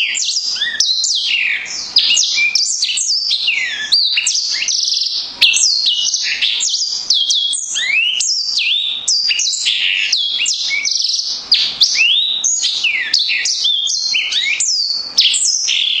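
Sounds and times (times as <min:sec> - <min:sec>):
bird singing whistled notes: 0:00.0 - 0:16.0.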